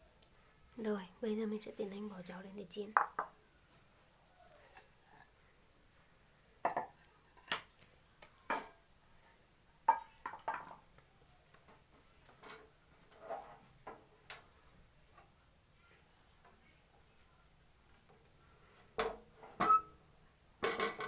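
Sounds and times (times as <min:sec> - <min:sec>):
frying pan and cookware clattering: 0:20.6 - 0:21.0.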